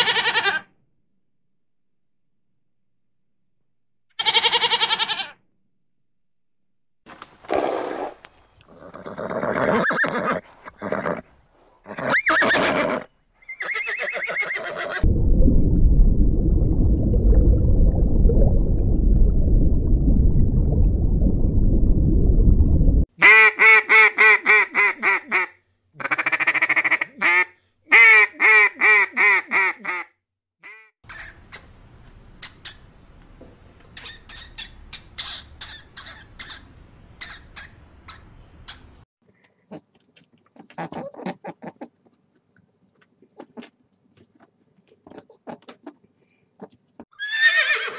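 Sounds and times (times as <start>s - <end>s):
horse neighing: 8.7s - 11.2s, 11.8s - 15.0s, 47.1s - 47.9s
low rushing noise: 15.0s - 23.0s
faint squeaks and clicks: 32.4s - 47.0s.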